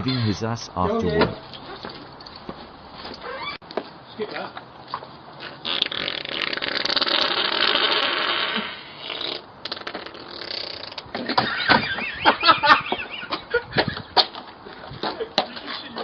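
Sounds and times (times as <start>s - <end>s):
long loud fart: 5.4s - 11.0s
short sputtering sounds: 5.6s - 11.0s.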